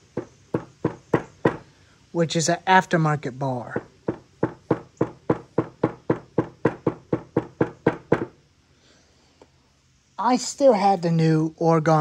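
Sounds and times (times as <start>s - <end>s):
rapid sharp knocks: 0.0s - 1.6s, 3.7s - 8.4s.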